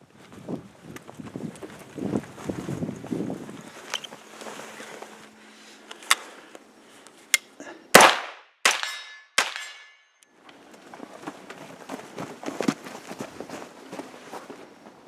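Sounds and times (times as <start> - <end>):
rifle shots echoing: 8.0 - 9.9.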